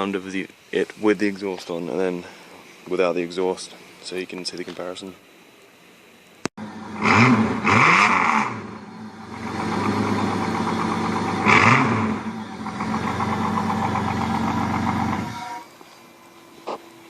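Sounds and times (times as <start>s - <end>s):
car engine revving and idling: 6.6s - 15.5s.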